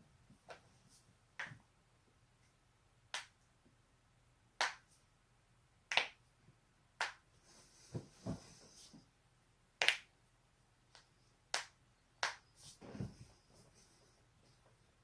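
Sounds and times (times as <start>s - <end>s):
soft rustles of movement: 7.4s - 9.1s, 12.5s - 15.0s.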